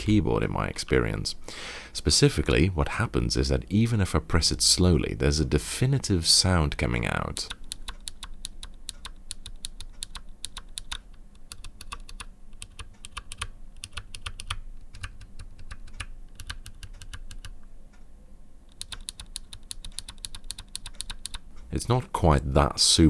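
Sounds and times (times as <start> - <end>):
keyboard switches clicking: 7.4 - 17.6, 18.7 - 21.7.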